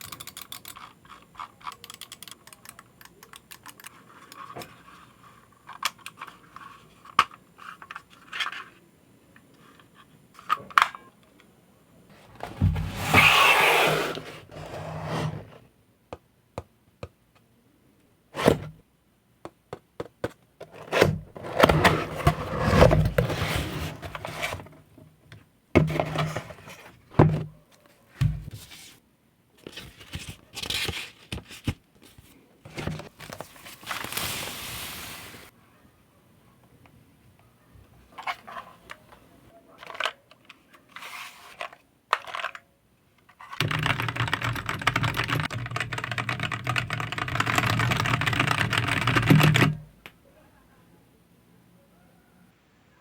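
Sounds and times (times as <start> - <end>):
packaging sliding and scraping: 12.1 - 15.6, 20.7 - 24.7, 32.7 - 35.5.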